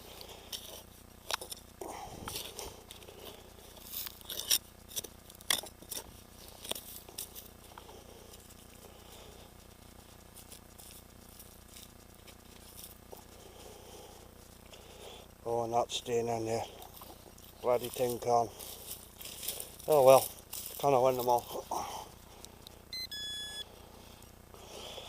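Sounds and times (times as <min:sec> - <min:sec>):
clicks and scrapes of digging soil: 0:00.0 - 0:13.5, 0:16.6 - 0:22.8.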